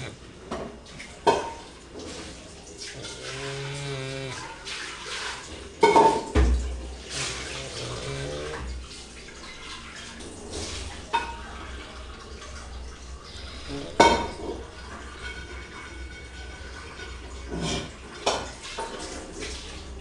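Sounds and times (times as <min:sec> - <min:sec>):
pet snoring: 0:00.0 - 0:00.2, 0:02.9 - 0:04.5, 0:07.0 - 0:08.8.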